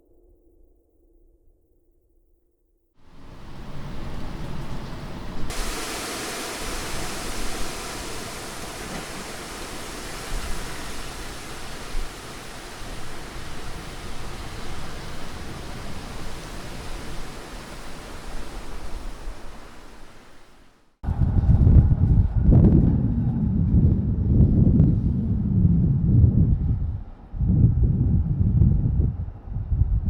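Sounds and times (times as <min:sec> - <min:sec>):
storm wind blowing through trees: 0:03.0 - 0:30.0.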